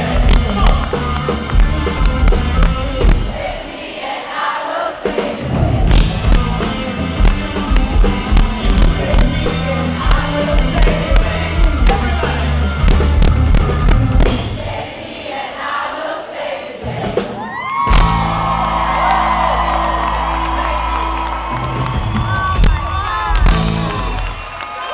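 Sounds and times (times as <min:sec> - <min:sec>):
live rock band playing: 0:00.0 - 0:03.4, 0:05.1 - 0:14.6, 0:17.9 - 0:24.4
person singing: 0:05.0 - 0:13.7.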